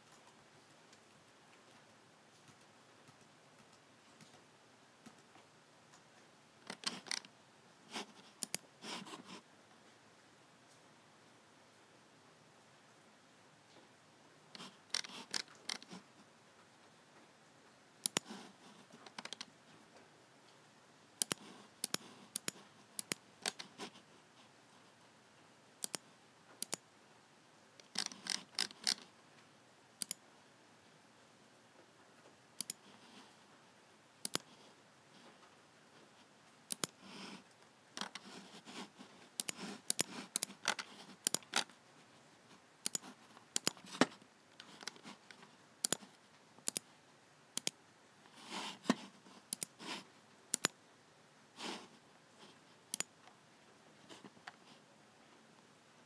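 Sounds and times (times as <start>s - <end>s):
mouse buttons clicking: 6.7s - 7.3s, 8.4s - 8.6s, 18.0s - 18.4s, 21.2s - 23.7s, 25.8s - 26.0s, 26.6s - 26.8s, 30.0s - 30.2s, 32.6s - 32.9s, 34.2s - 34.6s, 36.7s - 37.3s, 39.4s - 41.7s, 42.8s - 45.2s, 45.8s - 46.9s, 47.6s - 47.8s, 48.6s - 50.8s, 52.9s - 53.1s.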